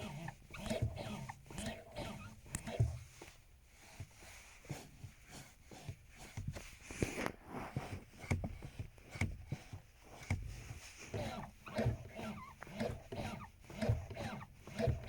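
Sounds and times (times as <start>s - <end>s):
brake pedal knocking and clicking: 0.0s - 3.4s, 7.8s - 15.0s.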